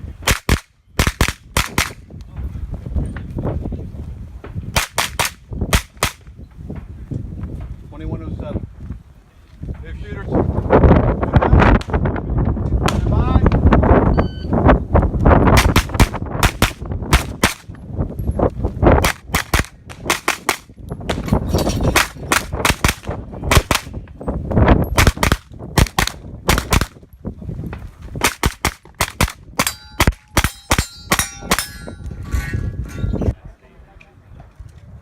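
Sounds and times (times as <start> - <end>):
rifle gunshots: 15.6 - 17.7, 21.9 - 23.9, 25.0 - 27.0
bullets ringing steel targets: 29.1 - 33.3.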